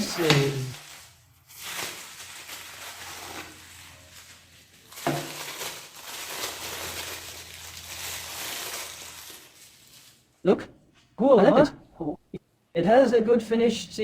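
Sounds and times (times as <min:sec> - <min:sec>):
packaging rustling and crinkling: 0:00.0 - 0:10.4.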